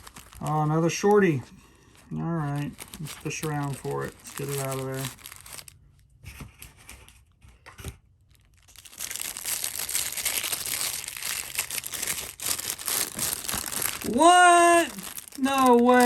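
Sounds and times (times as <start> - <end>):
packaging crinkling: 0.0 - 1.2, 1.8 - 5.8, 8.2 - 16.0.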